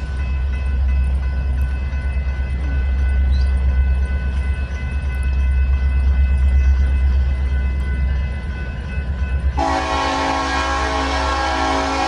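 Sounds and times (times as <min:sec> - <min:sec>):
diesel locomotive rumbling: 0:00.0 - 0:12.0.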